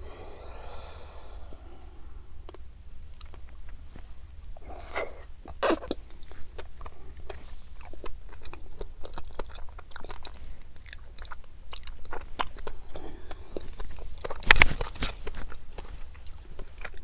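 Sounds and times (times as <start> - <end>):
chewing fish roe crisp clicks: 2.5 - 3.8, 5.8 - 17.0.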